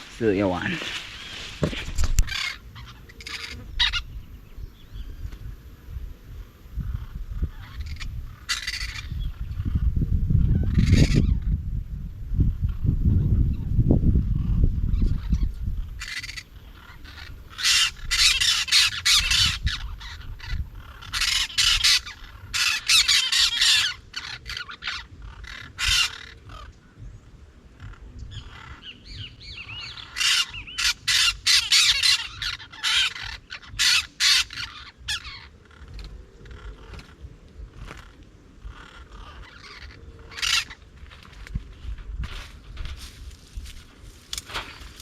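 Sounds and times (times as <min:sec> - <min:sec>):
parrots squawking: 0:00.0 - 0:04.2, 0:06.9 - 0:11.5, 0:14.9 - 0:26.7, 0:27.8 - 0:40.9.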